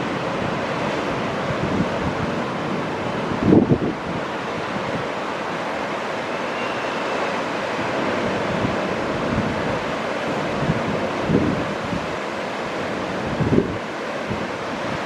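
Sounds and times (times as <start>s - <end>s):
wind buffeting microphone: 0.0s - 5.7s, 7.9s - 12.2s, 13.0s - 15.0s
ocean surf breaking: 0.0s - 15.0s.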